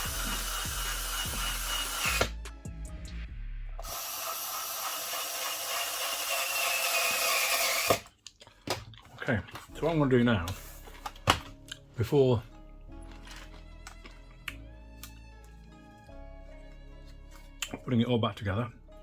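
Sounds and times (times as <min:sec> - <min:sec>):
electric screwdriver whirring: 0:00.0 - 0:02.4, 0:03.8 - 0:08.0.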